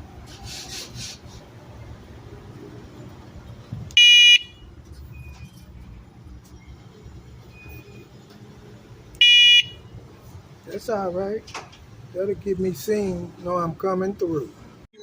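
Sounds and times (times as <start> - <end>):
electronic bike horn beep: 4.0 - 5.4, 9.2 - 9.9.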